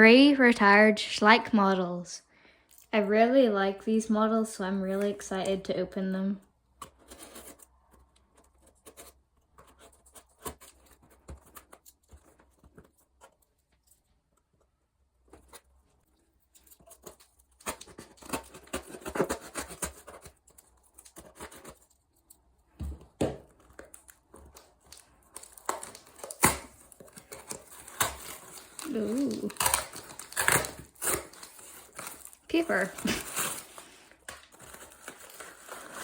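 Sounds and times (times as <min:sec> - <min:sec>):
packaging tearing and rustling: 0:16.4 - 0:22.5, 0:23.5 - 0:36.0.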